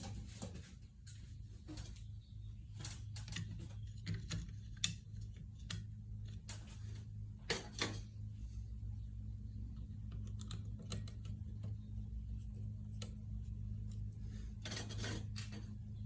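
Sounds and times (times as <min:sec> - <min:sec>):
steady low hum: 0:00.0 - 0:16.0
light clicks and taps: 0:09.7 - 0:14.2.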